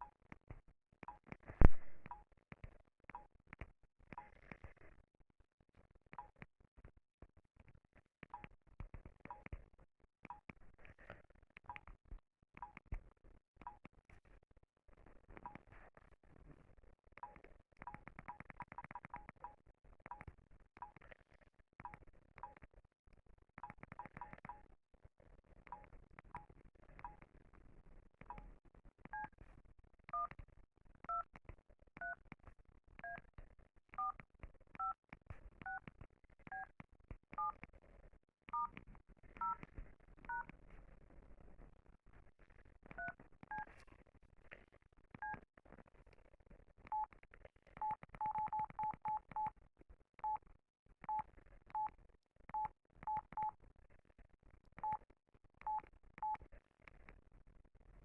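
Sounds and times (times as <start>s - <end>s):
two-tone keypad beeps: 47.8s - 49.5s.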